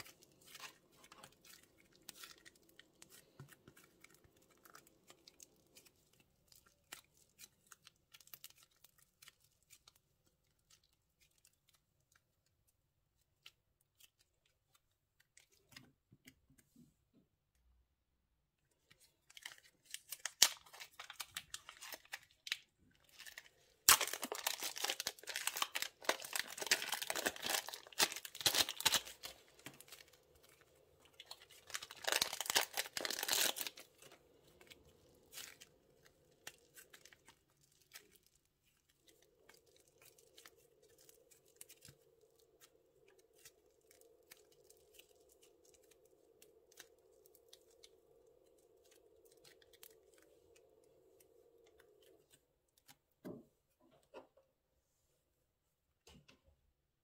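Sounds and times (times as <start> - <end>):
plastic bags crinkling: 19.2 - 50.8.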